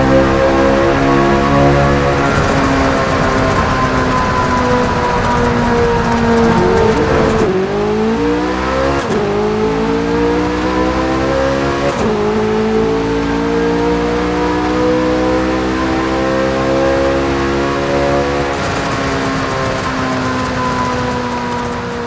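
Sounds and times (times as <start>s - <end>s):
car engine accelerating hard: 0.0s - 22.0s.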